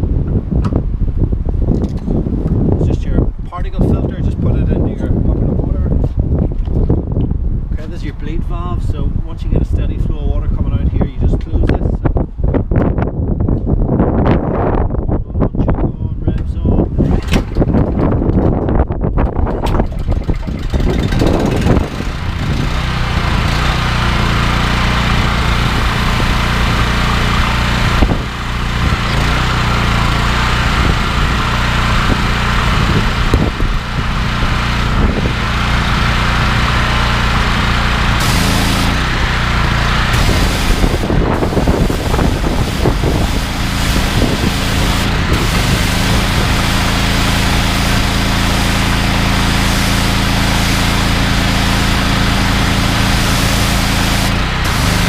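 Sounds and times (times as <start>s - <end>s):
petrol engine running: 19.6s - 55.0s
pressure washer hiss: 35.7s - 55.0s.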